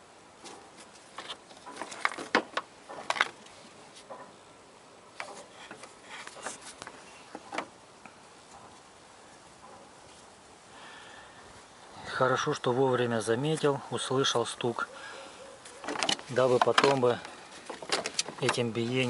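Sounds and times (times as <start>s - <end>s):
objects being handled: 0.4s - 4.3s, 5.1s - 7.8s, 15.5s - 19.0s.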